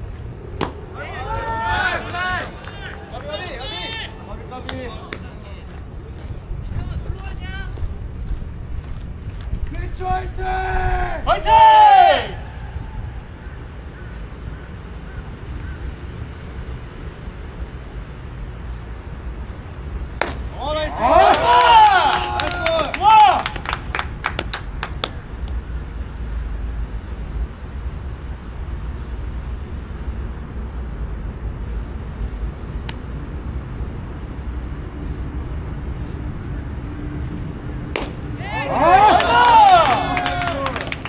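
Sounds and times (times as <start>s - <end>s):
faint distant calls: 0.0s - 8.8s, 11.0s - 41.0s
wind rumbling on microphone: 0.0s - 21.0s
faint outdoor background noise: 0.0s - 41.0s
sharp crack: 0.5s - 1.0s, 20.1s - 25.2s, 37.8s - 41.0s.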